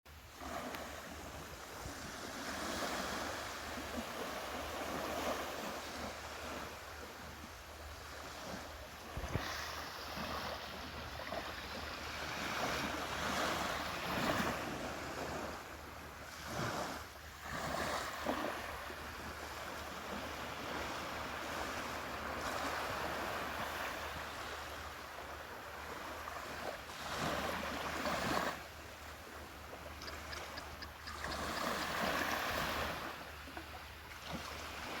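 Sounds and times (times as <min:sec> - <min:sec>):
ocean waves breaking on beach: 0:00.1 - 0:35.0.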